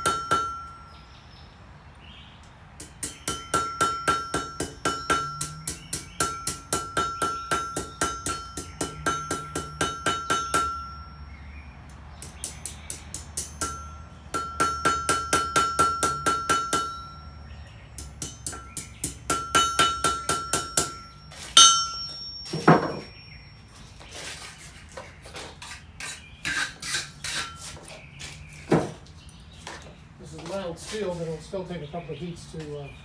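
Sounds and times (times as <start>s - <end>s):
hammer blows on anvil: 0.0s - 1.0s, 2.8s - 11.5s, 12.2s - 23.7s.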